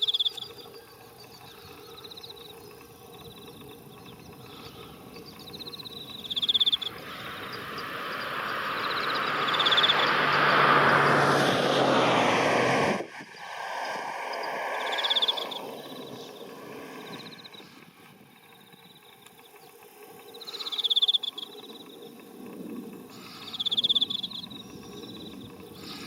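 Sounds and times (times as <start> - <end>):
insects trilling: 0.0 - 11.5, 13.2 - 26.0
vehicle passing: 1.4 - 18.2.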